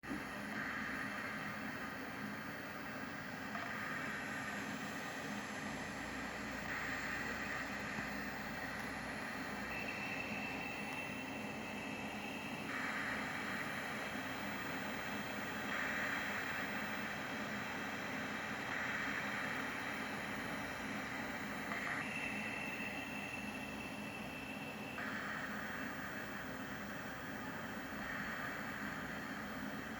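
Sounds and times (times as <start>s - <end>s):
hard drive hiss: 0.0s - 29.9s
thin whistle: 9.5s - 13.4s, 21.8s - 26.4s.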